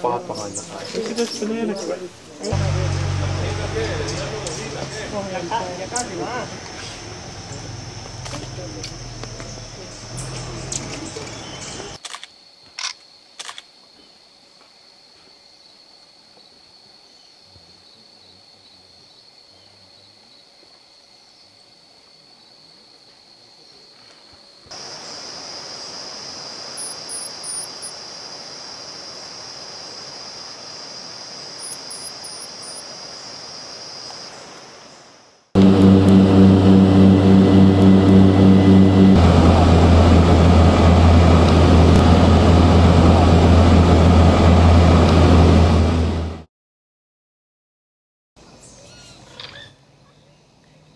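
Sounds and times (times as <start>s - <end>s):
faint forest ambience: 0.0s - 44.0s
propeller airplane engine: 2.5s - 12.0s, 35.6s - 46.5s.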